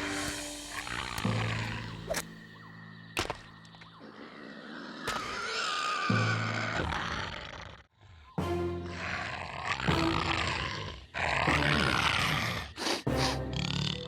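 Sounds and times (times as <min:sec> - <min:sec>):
large creature roaring: 0:00.0 - 0:02.2, 0:08.8 - 0:14.0
dramatic soundtrack music: 0:00.0 - 0:03.4, 0:08.3 - 0:12.1.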